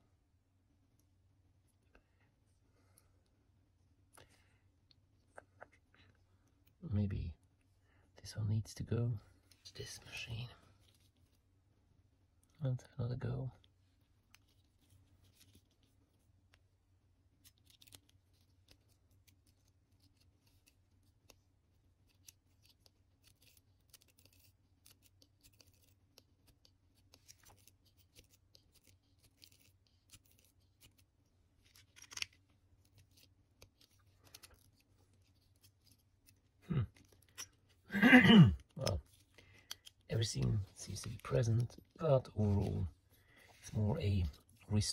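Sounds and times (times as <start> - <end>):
faint steady hum: 0.0 - 44.9
small clicks and scrapes of hands: 13.6 - 16.7, 17.3 - 37.8, 38.6 - 42.8.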